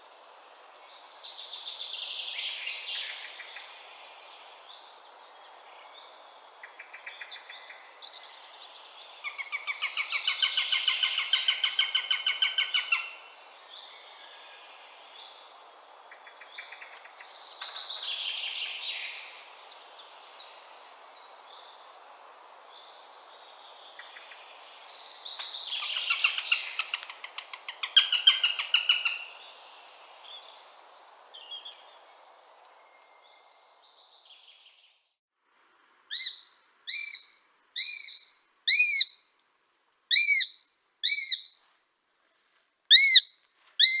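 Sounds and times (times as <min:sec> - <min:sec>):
hawk chattering calls: 0:25.8 - 0:29.3, 0:36.1 - 0:39.2, 0:40.1 - 0:41.5, 0:42.9 - 0:44.0.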